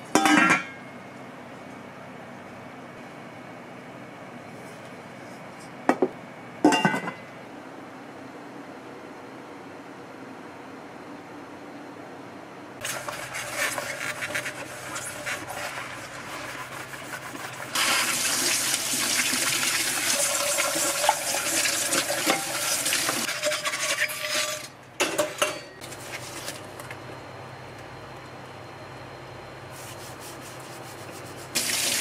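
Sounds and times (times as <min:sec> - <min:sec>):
water running and splashing: 0:16.7 - 0:23.3, 0:31.6 - 0:32.0.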